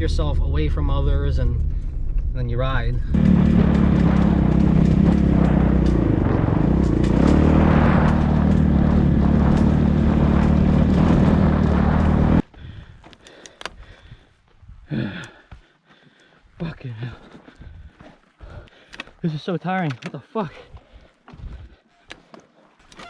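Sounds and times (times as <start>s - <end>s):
vehicle engine running steadily: 0.0s - 12.5s
man groaning sigh: 14.9s - 15.5s.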